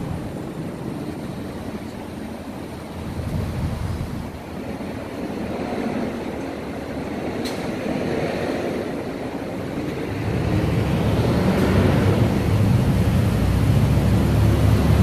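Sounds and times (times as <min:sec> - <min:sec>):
rush of traffic noise: 0:00.0 - 0:15.0
vehicle approaching rumble: 0:09.6 - 0:15.0.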